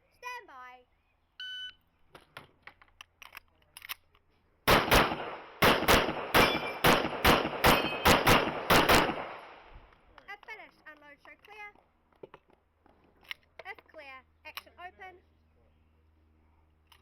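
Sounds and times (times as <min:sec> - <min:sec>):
rapid pistol fire: 0:04.7 - 0:09.7.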